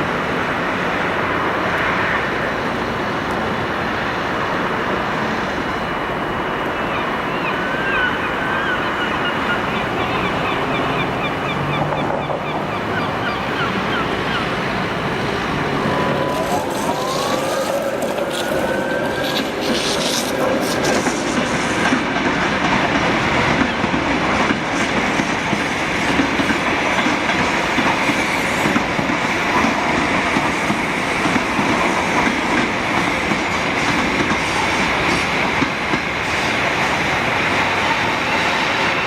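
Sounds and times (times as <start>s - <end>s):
tram motor whine: 0.0s - 24.7s
city street traffic: 0.0s - 39.0s.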